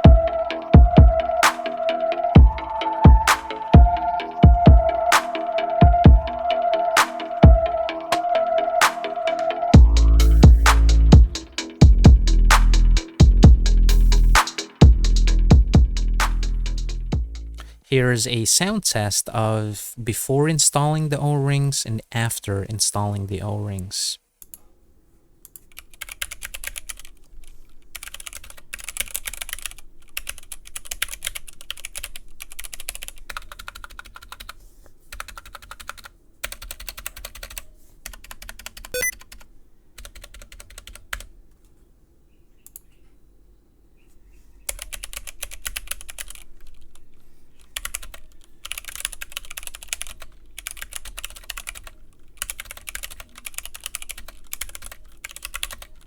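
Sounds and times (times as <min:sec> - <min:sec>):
mechanical keyboard typing: 0:25.5 - 0:27.2, 0:27.9 - 0:41.3, 0:44.7 - 0:47.0, 0:47.7 - 0:56.0.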